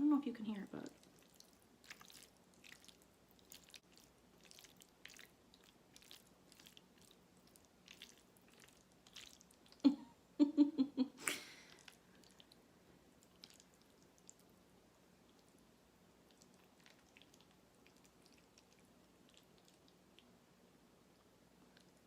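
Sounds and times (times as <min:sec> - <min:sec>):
mouth chewing and smacking: 0:00.8 - 0:09.9, 0:11.7 - 0:14.6, 0:15.2 - 0:20.4, 0:21.1 - 0:22.0.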